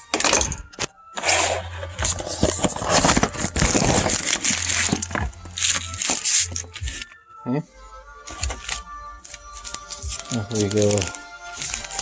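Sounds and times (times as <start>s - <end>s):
rustling and scraping: 1.2s - 7.1s
plastic packaging crinkling: 1.8s - 7.1s, 8.4s - 12.0s.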